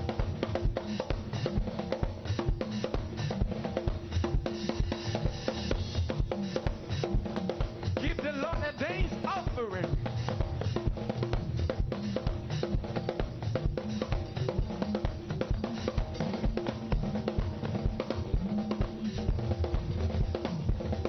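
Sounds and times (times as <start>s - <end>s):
fast drum beat: 0.0s - 21.0s.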